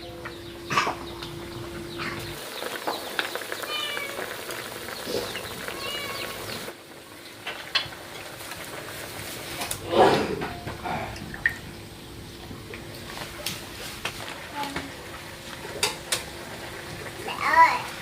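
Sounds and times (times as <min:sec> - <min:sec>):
cat meowing: 0:03.6 - 0:04.3, 0:05.7 - 0:06.4.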